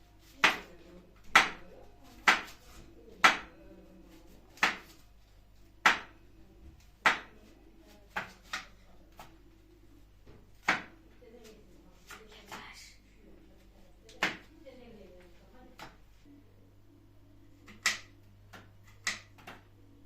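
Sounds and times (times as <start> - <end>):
knife chopping on cutting board: 2.2 - 2.6, 10.6 - 10.9.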